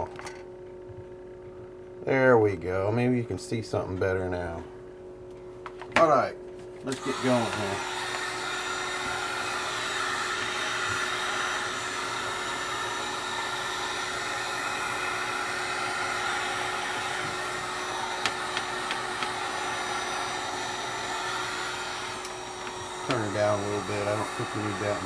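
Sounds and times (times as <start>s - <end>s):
heat gun humming: 6.8s - 25.0s.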